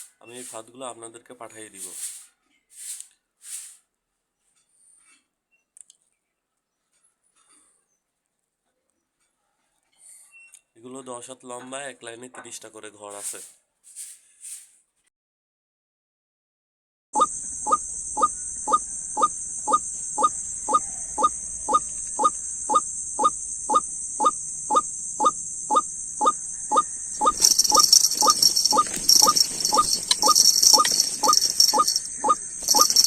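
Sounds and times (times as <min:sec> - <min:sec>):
steady high hiss: 0:17.3 - 0:33.0
jingling rattle: 0:26.3 - 0:33.0.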